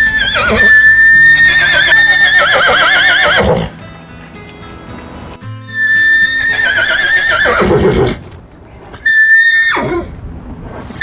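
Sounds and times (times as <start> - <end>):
horse whinnying: 0.0 - 3.7, 5.8 - 8.3, 9.0 - 10.1.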